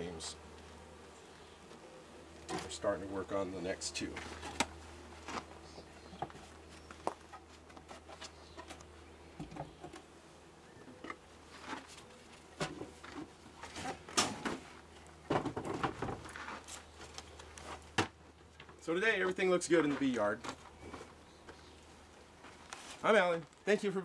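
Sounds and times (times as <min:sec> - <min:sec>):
wooden frames knocking and scraping: 0:10.9 - 0:16.7.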